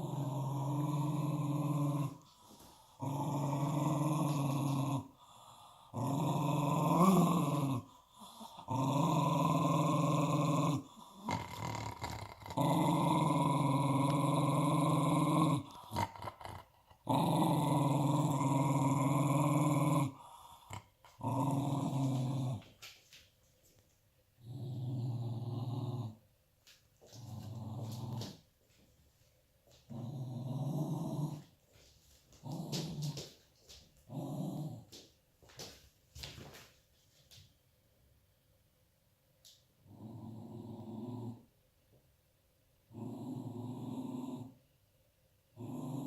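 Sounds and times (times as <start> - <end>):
dog growling: 0.0 - 22.9, 24.4 - 26.2, 27.0 - 28.4, 29.9 - 31.5, 32.3 - 33.4, 34.1 - 35.0, 39.8 - 41.5, 42.9 - 44.6, 45.6 - 46.0.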